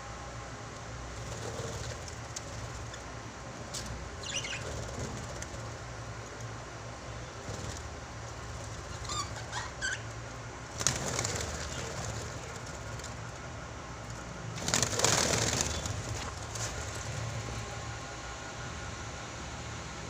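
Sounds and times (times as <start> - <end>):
steady low hum: 0.0 - 20.0
wings flapping: 1.2 - 3.0, 3.8 - 5.9, 7.4 - 9.8, 10.7 - 13.4, 14.0 - 17.6
pet birds chirping: 4.2 - 5.0, 8.7 - 10.2.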